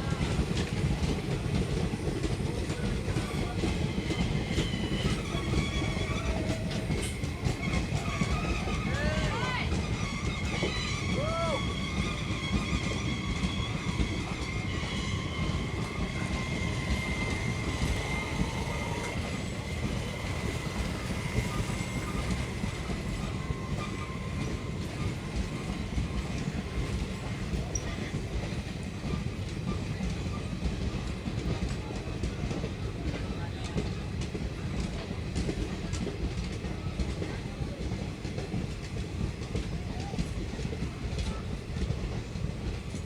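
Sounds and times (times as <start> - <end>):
train wheels rumbling on rails: 0.0 - 43.0
high brake squeal: 3.2 - 28.5.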